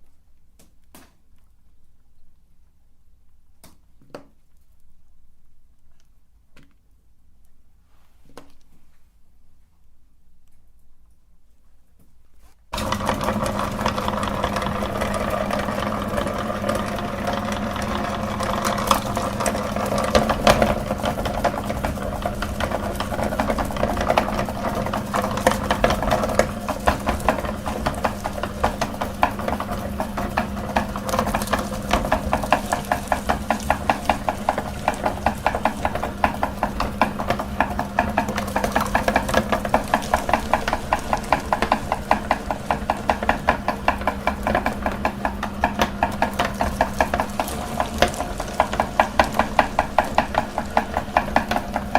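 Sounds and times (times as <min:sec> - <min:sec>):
meat grinder motor hum: 0:12.8 - 0:51.9.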